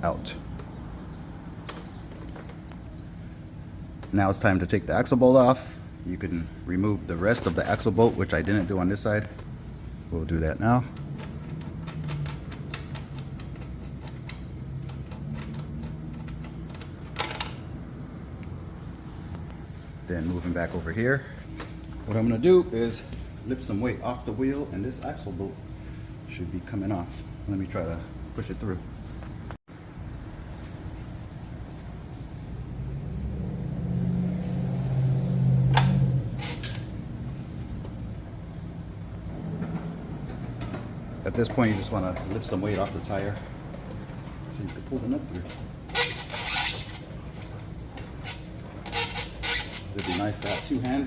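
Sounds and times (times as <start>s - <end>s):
low engine-like hum: 0.0s - 46.0s
metal-on-metal clinks: 35.8s - 37.1s.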